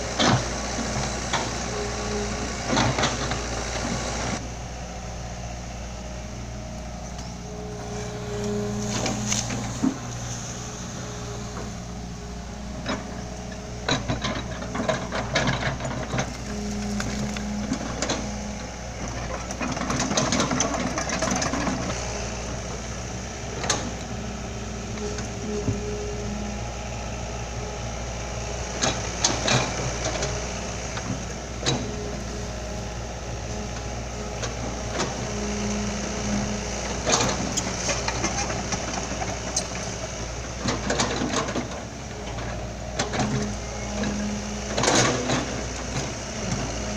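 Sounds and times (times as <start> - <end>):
engine knocks and clatter: 0.0 - 46.9
heavy diesel engine running: 0.0 - 46.9.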